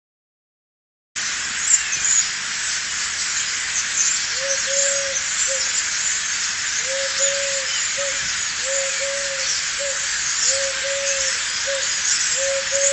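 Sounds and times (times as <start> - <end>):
steady hiss: 1.2 - 12.9
bird cooing: 4.4 - 5.7, 6.8 - 12.9.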